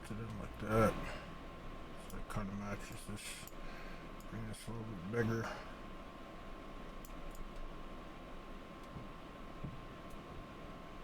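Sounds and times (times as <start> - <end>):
thin constant hum: 0.0 - 11.0
computer mouse clicks: 7.0 - 7.7.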